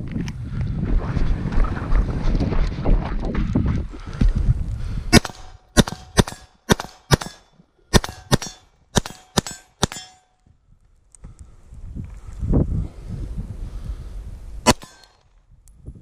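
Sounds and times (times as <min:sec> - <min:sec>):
rifle shots: 0:05.1 - 0:10.3, 0:14.7 - 0:15.2.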